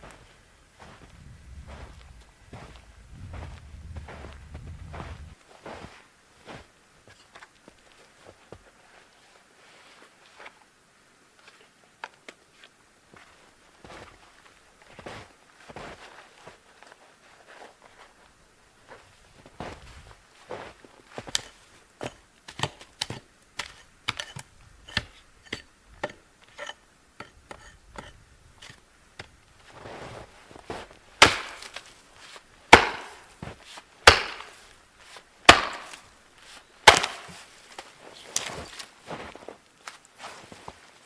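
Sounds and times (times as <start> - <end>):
heavy wood chopping blows: 30.8 - 32.0, 32.6 - 34.8, 35.4 - 36.2, 36.8 - 37.8.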